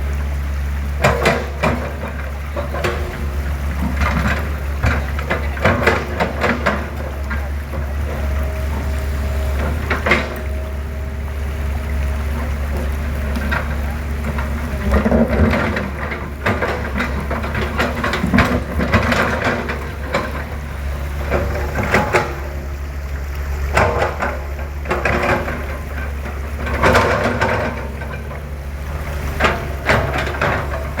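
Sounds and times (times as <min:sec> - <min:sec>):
diesel engine droning: 0:00.0 - 0:31.0
metal knocks and scraping: 0:12.4 - 0:22.7, 0:29.2 - 0:31.0.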